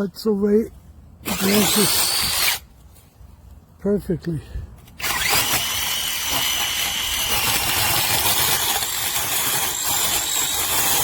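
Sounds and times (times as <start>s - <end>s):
mini chainsaw whining: 1.3s - 2.6s, 5.0s - 11.0s.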